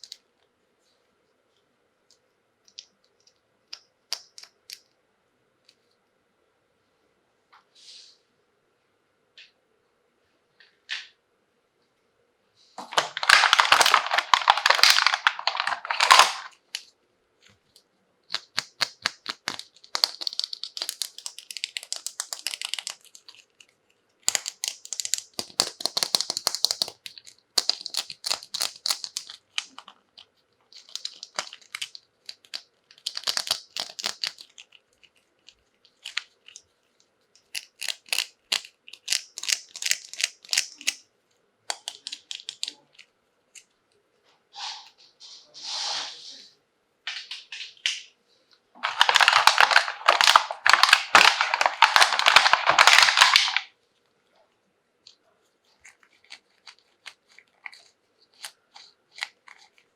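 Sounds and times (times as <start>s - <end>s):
packaging crinkling and tearing: 12.8s - 16.6s, 18.3s - 36.7s, 37.4s - 41.0s, 41.7s - 43.1s, 48.8s - 53.7s, 55.8s - 59.9s.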